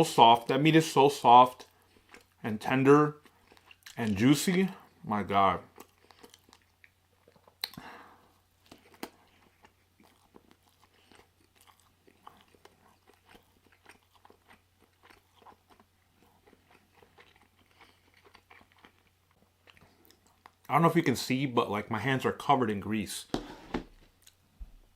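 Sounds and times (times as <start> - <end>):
person chewing with wet smacks: 1.6 - 2.4, 3.1 - 5.0, 5.6 - 20.7.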